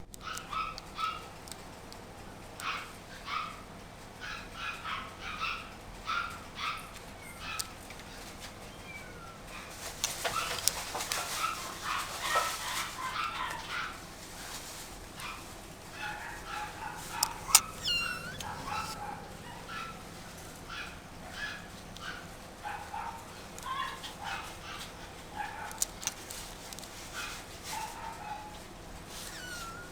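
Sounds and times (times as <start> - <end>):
puppy yipping and whining: 0.2 - 1.2, 16.0 - 25.7, 29.1 - 29.9
sharp click: 17.2 - 19.0
falling squeal: 17.3 - 19.0.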